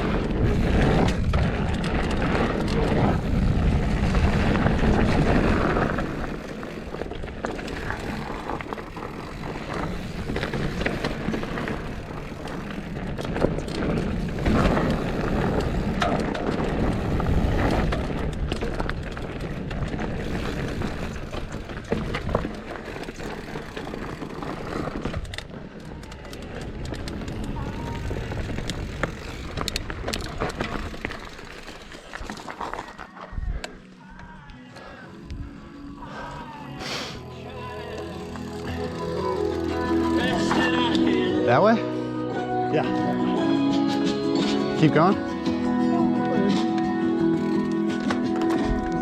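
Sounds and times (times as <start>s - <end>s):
wind on microphone: 0.0s - 31.3s
bike rattling over bumps: 0.0s - 33.8s, 37.4s - 41.8s, 44.8s - 49.0s
tyres rolling on dirt: 0.0s - 35.9s, 37.4s - 41.8s.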